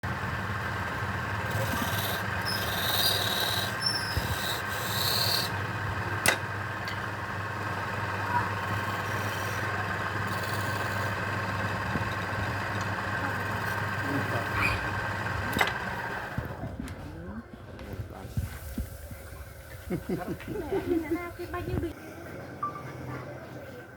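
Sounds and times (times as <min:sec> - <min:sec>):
steady machine hum: 0:00.0 - 0:22.6
wood being rasped: 0:00.7 - 0:06.0, 0:07.8 - 0:16.4.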